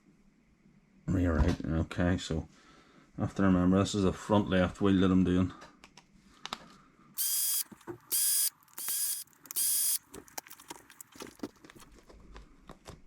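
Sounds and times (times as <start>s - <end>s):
cordless driver whining: 7.2s - 10.0s
small parts clicking: 7.2s - 11.7s.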